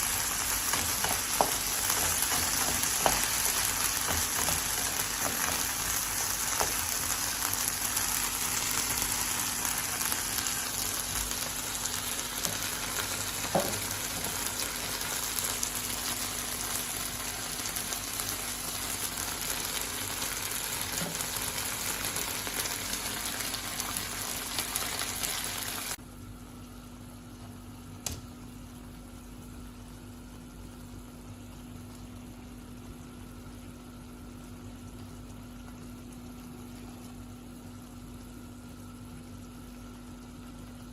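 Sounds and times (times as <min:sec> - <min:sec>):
chicken frying in hot oil: 0:00.0 - 0:40.9
low steady hum: 0:25.9 - 0:40.9.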